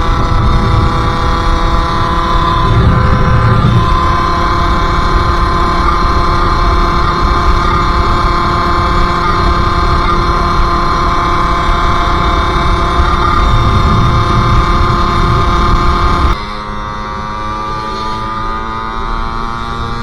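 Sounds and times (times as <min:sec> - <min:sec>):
two-stroke engine at high revs: 0:00.0 - 0:20.0.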